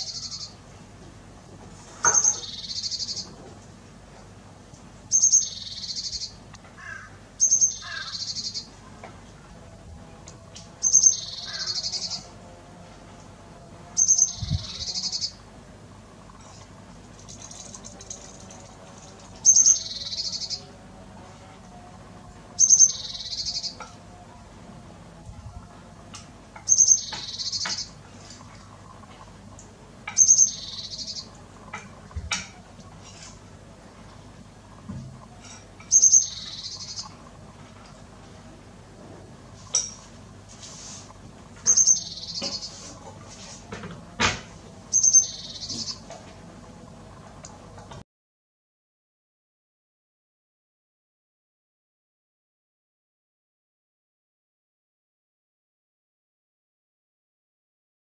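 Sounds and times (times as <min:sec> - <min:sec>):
songbird buzzy chattering call: 0:02.0 - 0:03.3, 0:17.2 - 0:20.7, 0:22.6 - 0:23.8, 0:26.6 - 0:28.0, 0:30.1 - 0:31.3, 0:35.8 - 0:37.2, 0:41.6 - 0:42.8, 0:44.9 - 0:46.0.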